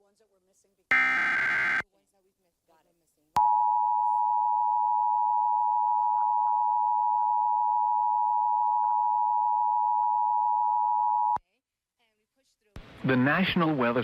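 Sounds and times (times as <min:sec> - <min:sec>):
two-tone alert signal: 0:00.9 - 0:01.8.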